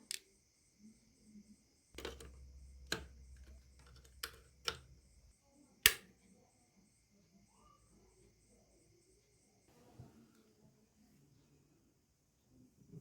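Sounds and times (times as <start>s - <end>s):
sharp clicks and taps: 2.0s - 5.2s.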